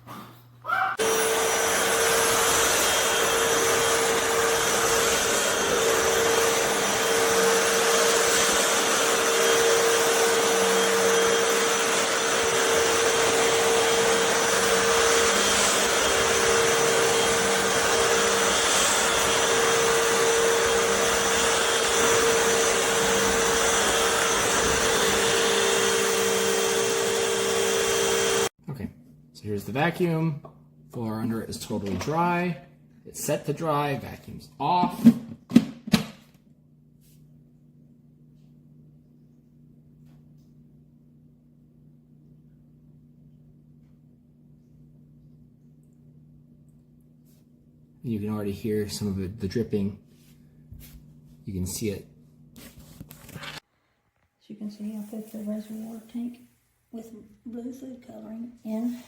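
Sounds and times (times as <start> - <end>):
floor cleaner motor whining: 1.0 - 28.5.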